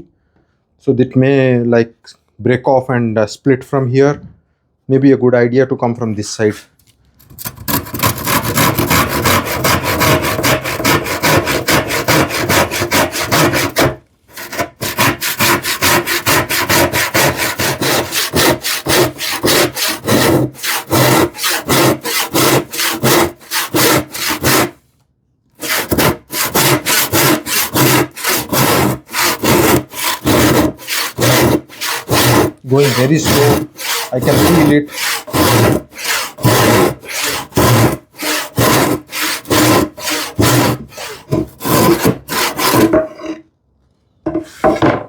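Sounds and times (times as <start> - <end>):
hand saw cutting wood: 7.4 - 24.8, 25.6 - 43.4, 44.4 - 44.9.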